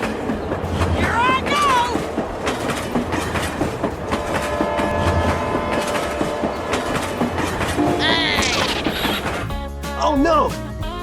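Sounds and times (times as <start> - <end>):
train wheels clacking over rail joints: 0.0 - 9.5
held horn tone: 4.1 - 9.4.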